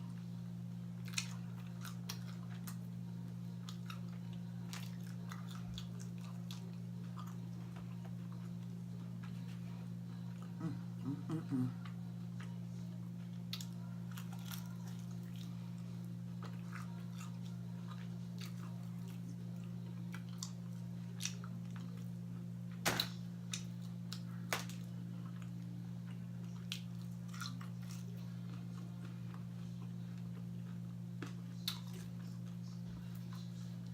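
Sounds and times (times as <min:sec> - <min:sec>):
chewing crunchy fried food: 0:00.0 - 0:33.9
steady low hum: 0:00.0 - 0:33.9.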